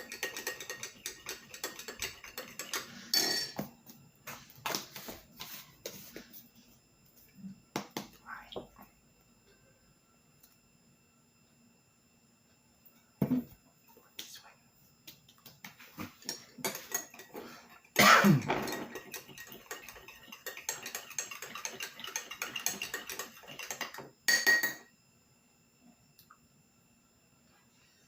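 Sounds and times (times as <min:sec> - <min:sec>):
metal spoon clinking in a cup: 0:00.0 - 0:03.6, 0:18.6 - 0:24.9.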